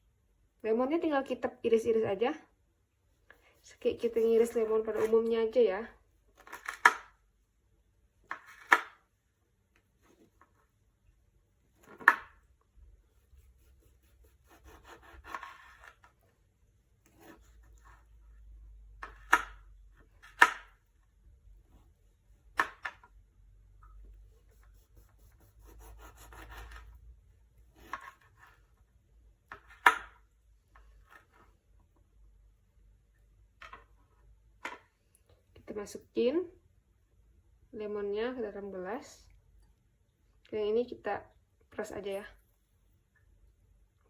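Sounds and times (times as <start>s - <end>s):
knife sawing through lemon: 13.6s - 15.7s, 25.2s - 26.8s.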